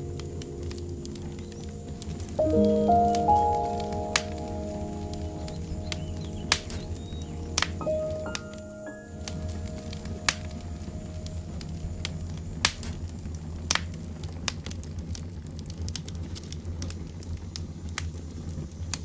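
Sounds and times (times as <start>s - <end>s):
steady low rumble: 0.0s - 18.7s
fire popping and crackling: 0.0s - 19.0s.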